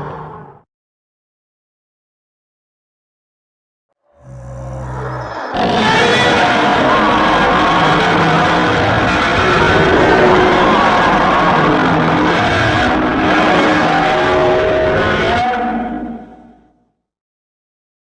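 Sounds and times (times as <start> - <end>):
loud distorted rock music: 6.3 - 15.5.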